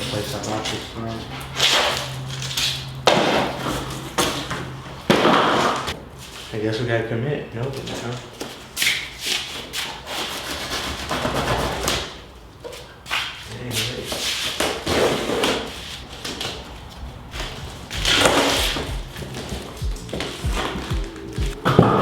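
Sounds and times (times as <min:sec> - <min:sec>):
rustling scraping and knocks: 0:12.8 - 0:20.3.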